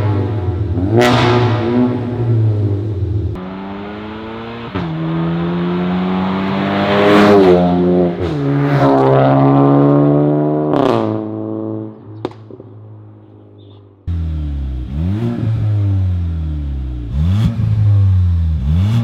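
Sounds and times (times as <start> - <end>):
exhaust crack: 0.0 - 8.6, 11.9 - 13.5, 14.1 - 19.0
car engine accelerating hard: 0.0 - 11.8, 14.1 - 19.0.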